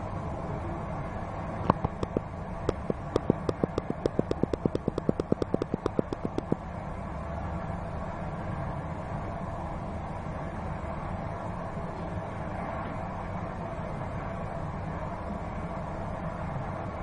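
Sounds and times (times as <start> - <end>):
rapid sharp clicks: 1.6 - 6.6.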